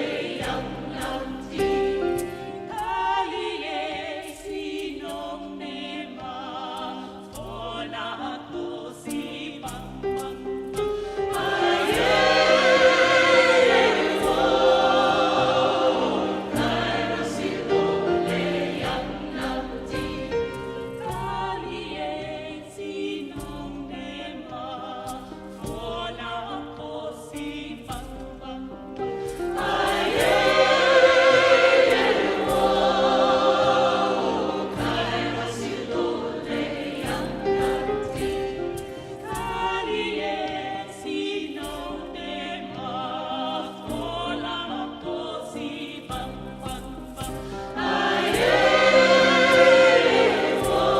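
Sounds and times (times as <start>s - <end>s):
choir singing: 0.0s - 50.9s
percussive strikes: 29.0s - 40.8s, 46.1s - 50.9s.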